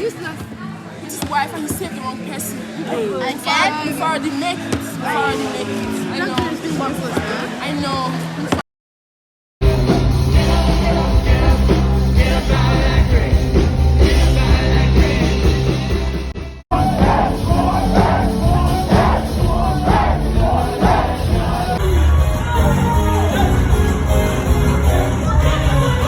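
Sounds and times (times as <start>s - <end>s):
voices singing: 9.6s - 16.1s, 16.7s - 26.0s
music with heavy bass beat: 9.6s - 26.0s.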